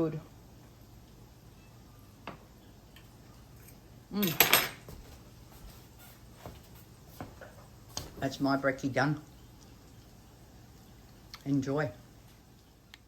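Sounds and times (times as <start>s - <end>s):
cutlery clinking on plate: 3.6s - 5.0s.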